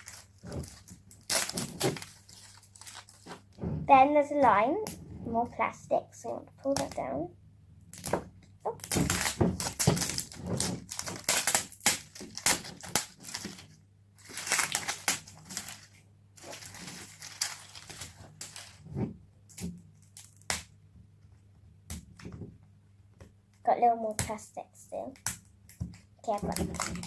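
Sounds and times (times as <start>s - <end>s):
plastic wrapping crinkling: 0.0s - 3.6s, 7.9s - 18.9s, 25.8s - 27.0s.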